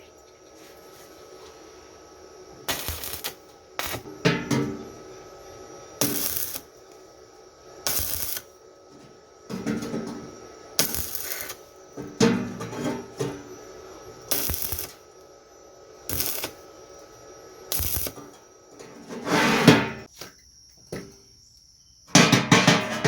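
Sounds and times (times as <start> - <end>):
metal clattering and scraping: 12.0 - 13.4, 18.8 - 20.1, 22.2 - 23.0.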